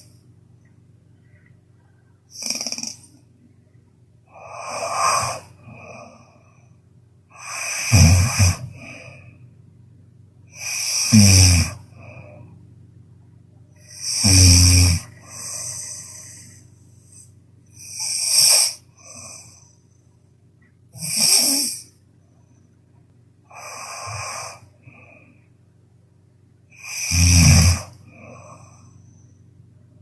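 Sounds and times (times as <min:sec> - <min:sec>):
person snoring loudly: 0:02.3 - 0:03.2, 0:04.3 - 0:06.4, 0:07.3 - 0:09.4, 0:10.5 - 0:12.6, 0:13.8 - 0:17.2, 0:17.8 - 0:19.7, 0:20.9 - 0:21.9, 0:23.5 - 0:25.2, 0:26.7 - 0:28.9.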